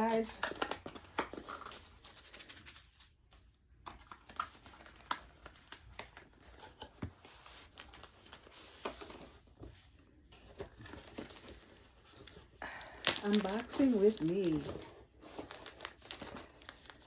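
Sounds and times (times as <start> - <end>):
packaging being opened by hand: 10.4 - 17.0.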